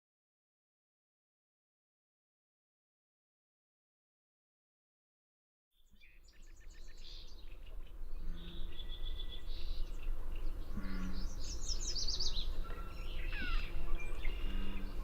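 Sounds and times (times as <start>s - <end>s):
bird singing varied phrases: 5.9s - 15.0s.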